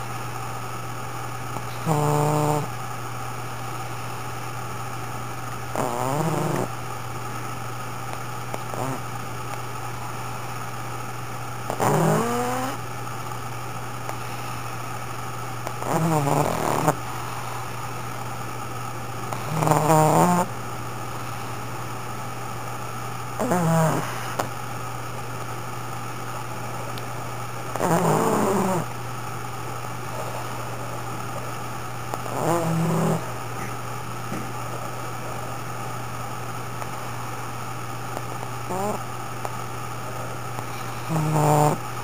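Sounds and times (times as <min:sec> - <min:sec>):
dog snoring loudly: 0:01.6 - 0:02.7, 0:05.7 - 0:06.8, 0:08.5 - 0:09.1, 0:11.7 - 0:12.8, 0:15.6 - 0:18.0, 0:19.2 - 0:20.5, 0:23.4 - 0:24.5, 0:27.7 - 0:28.9, 0:30.0 - 0:31.5, 0:32.1 - 0:33.7, 0:38.7 - 0:39.0, 0:40.0 - 0:41.8.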